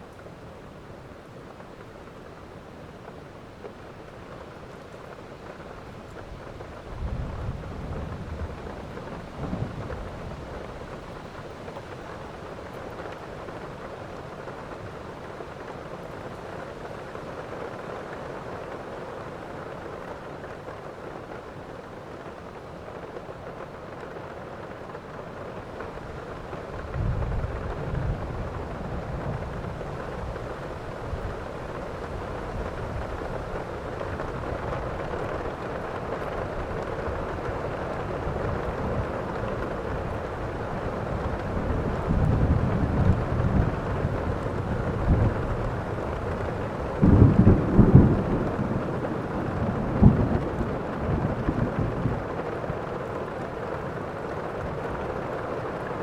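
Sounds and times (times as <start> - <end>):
heavy rain falling: 0.0 - 56.0
thunder rumbling: 26.7 - 55.1.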